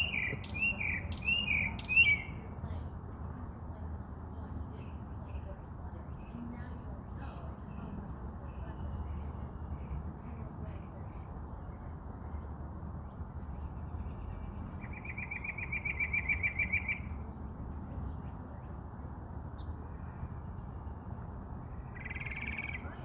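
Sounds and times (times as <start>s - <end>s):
songbird trilling: 0.0s - 2.9s, 12.9s - 23.0s.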